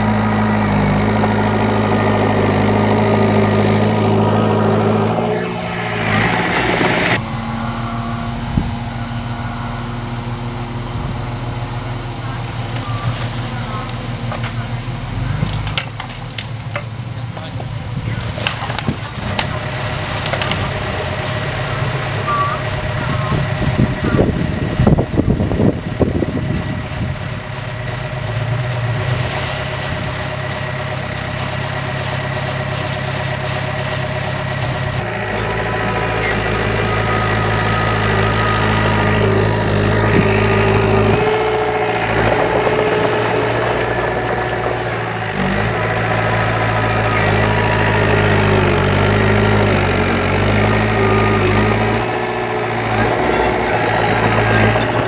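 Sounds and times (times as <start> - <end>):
construction machine diesel engine: 0.0 - 55.0.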